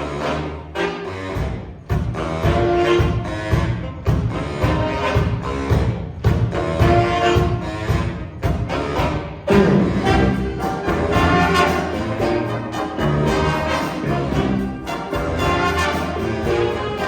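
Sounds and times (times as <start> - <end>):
saxophone section playing jazz: 0.0 - 17.0
bass guitar: 1.3 - 17.0
piano: 8.6 - 17.0.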